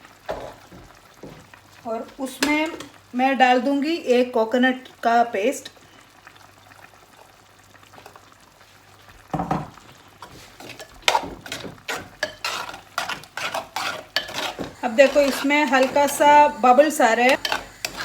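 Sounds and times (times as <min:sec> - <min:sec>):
spoon scraping and knocking pan: 0:00.3 - 0:01.4, 0:09.4 - 0:18.0.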